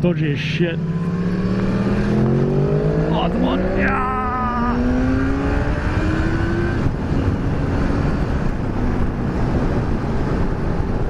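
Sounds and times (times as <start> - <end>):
motorcycle engine accelerating: 0.0 - 11.0
wind and road noise: 0.0 - 11.0.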